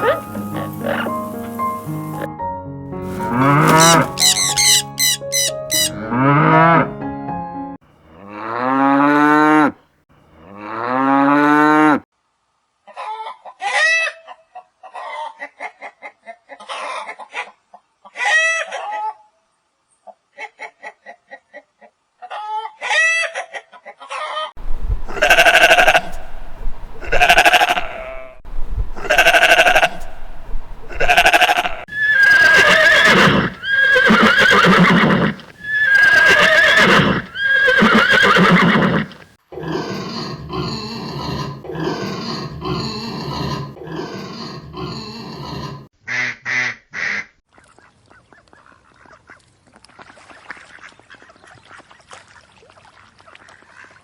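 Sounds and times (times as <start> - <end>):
farm animal calls: 0.0 - 2.3, 3.1 - 6.9, 25.1 - 26.4, 27.0 - 28.4, 29.0 - 49.4.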